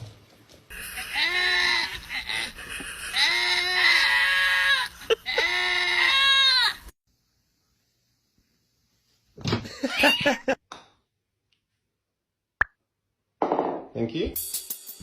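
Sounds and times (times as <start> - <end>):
animal crying: 0.7 - 6.9.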